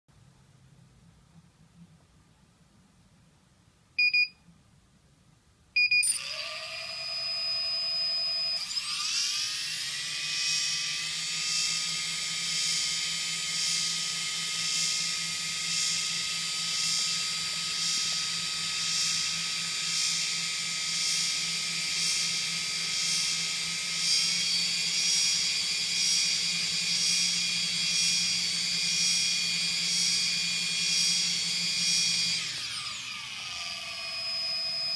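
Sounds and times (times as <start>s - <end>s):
short beep: 4.0s - 4.4s, 5.8s - 6.2s
electric motor high whine: 6.0s - 34.9s.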